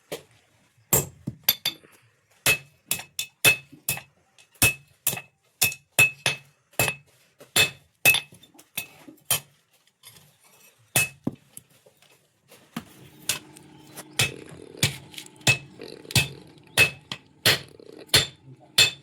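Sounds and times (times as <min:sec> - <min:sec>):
low steady hum: 0:12.8 - 0:19.0
hammer ringing on anvil: 0:14.2 - 0:19.0.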